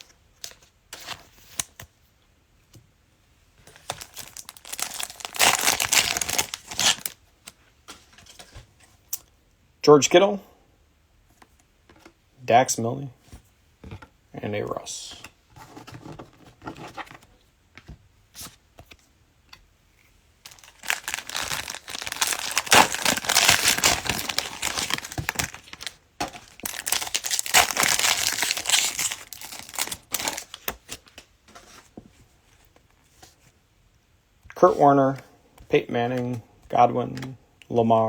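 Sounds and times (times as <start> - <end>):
cellophane wrapper tearing and crinkling: 3.8 - 7.2, 20.5 - 30.8.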